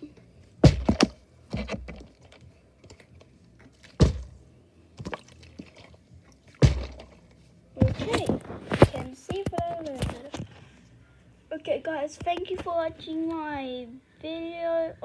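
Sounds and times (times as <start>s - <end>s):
bottle handling knocks: 0.6s - 2.2s, 4.0s - 4.4s, 6.6s - 7.2s, 7.8s - 8.3s
plastic bottle thudding down: 0.6s - 2.3s, 4.0s - 4.4s, 6.6s - 7.2s, 7.8s - 10.4s.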